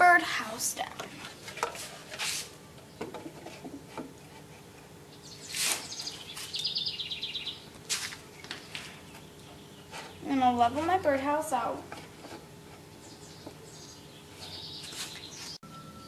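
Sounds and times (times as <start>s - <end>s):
handling scuffs and rustles: 1.0s - 2.6s, 5.4s - 6.7s, 7.8s - 9.3s, 14.4s - 15.6s
small bird trilling: 5.2s - 7.7s.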